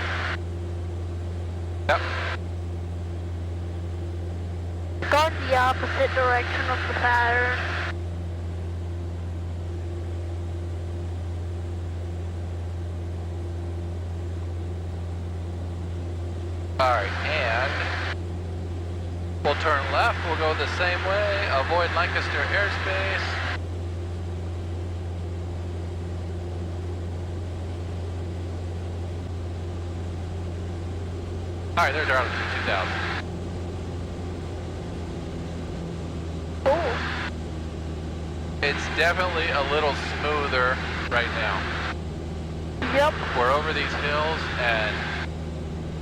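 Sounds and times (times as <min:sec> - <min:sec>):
propeller plane engine drone: 0:00.0 - 0:46.0
constant cabin hiss: 0:19.5 - 0:23.6, 0:31.8 - 0:33.2, 0:38.6 - 0:41.9, 0:42.8 - 0:45.3.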